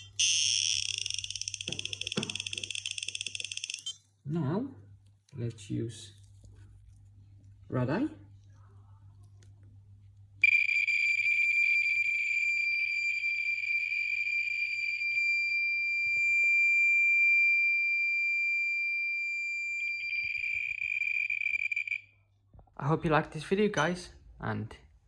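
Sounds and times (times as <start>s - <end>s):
radiation detector alarm tone: 0.0s - 4.0s, 10.4s - 22.2s
faint crackle: 19.6s - 22.7s.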